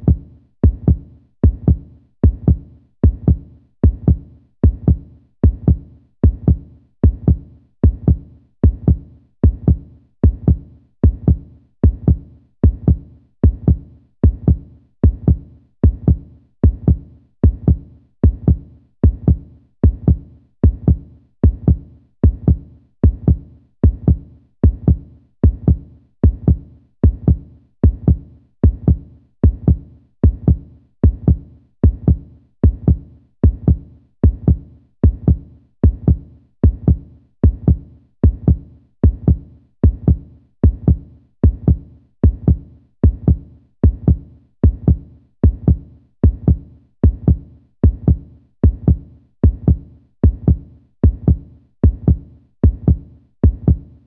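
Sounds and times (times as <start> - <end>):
human heartbeat: 0.0 - 53.9.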